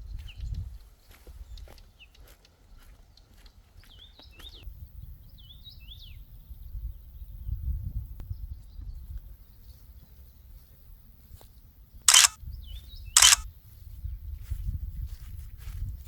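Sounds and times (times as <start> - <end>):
wind rumble on microphone: 0.0 - 1.8, 4.5 - 9.8, 12.4 - 16.0
short sharp bursts: 12.1 - 12.4, 13.2 - 13.4.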